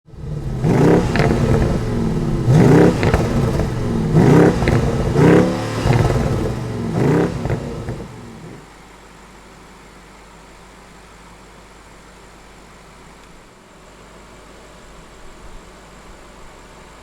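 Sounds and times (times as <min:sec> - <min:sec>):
car engine throttle blips: 0:00.1 - 0:08.7
exhaust cracks: 0:00.1 - 0:08.7
car engine idling: 0:00.1 - 0:08.8.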